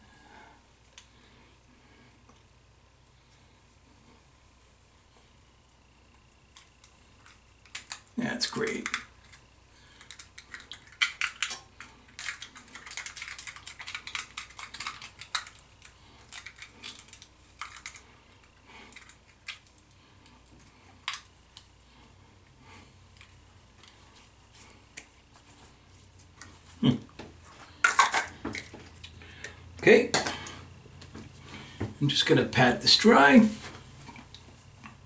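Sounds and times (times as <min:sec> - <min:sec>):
small objects clicking and rubbing: 0:06.4 - 0:21.8, 0:27.6 - 0:30.6.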